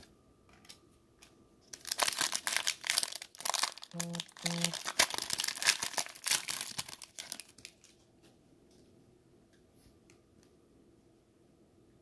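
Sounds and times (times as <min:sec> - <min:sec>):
foil wrapper crinkling: 0:00.6 - 0:08.0.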